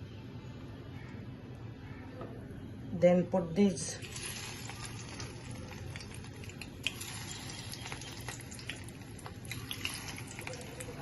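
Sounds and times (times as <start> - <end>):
hot oil sizzling and popping: 4.0 - 11.0.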